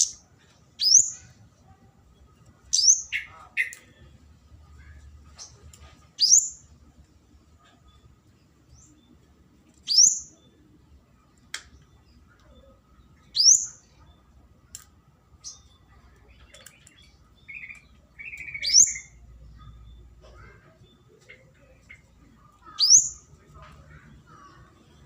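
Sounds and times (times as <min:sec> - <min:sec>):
high bird chirps: 0:00.0 - 0:01.4, 0:02.2 - 0:04.0, 0:06.2 - 0:06.8, 0:07.6 - 0:10.7, 0:11.7 - 0:14.3, 0:15.3 - 0:25.0.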